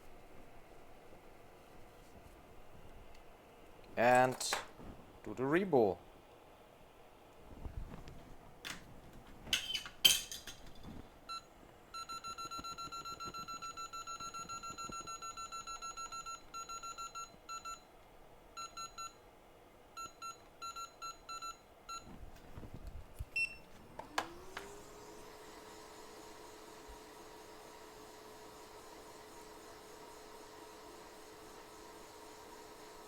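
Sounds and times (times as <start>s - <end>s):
blower whine and hum: 22.0s - 33.0s.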